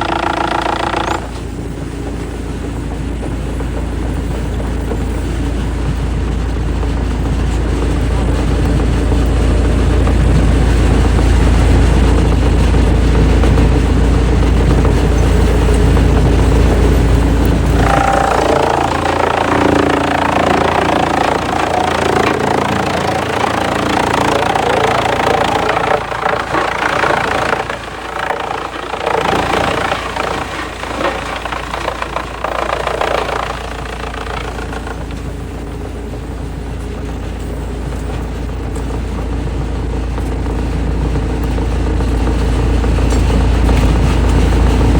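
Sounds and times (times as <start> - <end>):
deep engine rumble: 0.0 - 44.9
noisy uneven machinery sound: 0.0 - 44.9.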